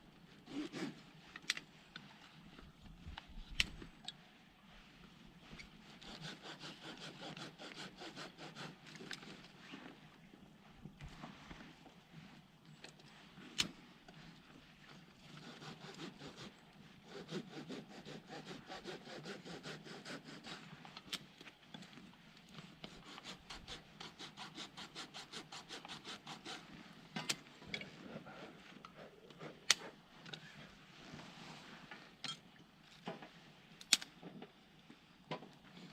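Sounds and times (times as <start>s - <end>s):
rapid cutting or rubbing strokes: 0.5s - 0.9s, 5.8s - 9.3s, 15.2s - 20.8s, 22.6s - 26.9s.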